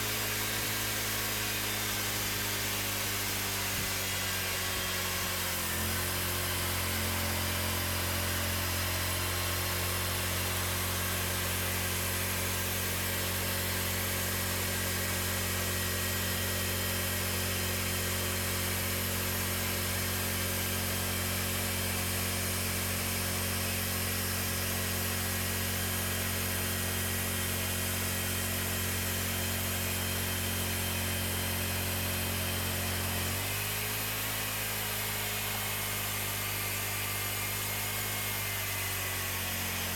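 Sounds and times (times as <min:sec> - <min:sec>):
band sawmill cutting log: 0:00.0 - 0:39.9.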